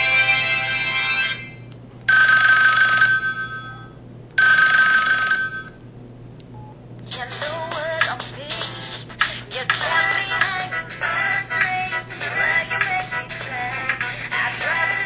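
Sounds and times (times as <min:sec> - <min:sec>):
phone tone: 0:00.0 - 0:05.8
telephone bell ringtone: 0:00.0 - 0:05.8.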